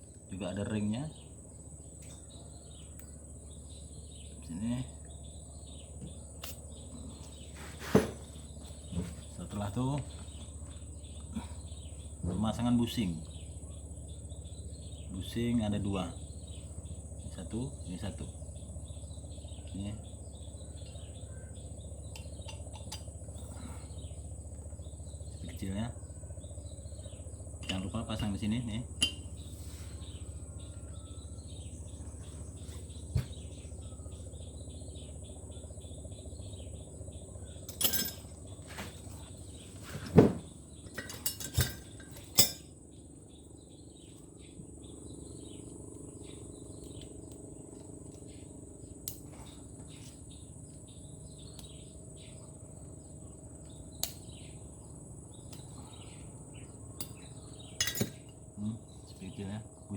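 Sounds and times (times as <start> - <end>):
insects chirping: 0.0 - 59.9
small steel pieces clinking: 37.7 - 38.3, 57.8 - 58.3.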